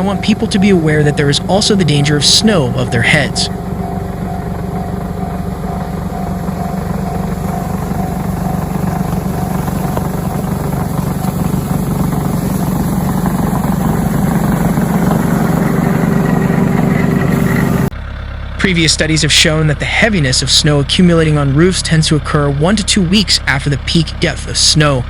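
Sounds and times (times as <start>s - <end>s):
engine running: 0.0s - 25.0s.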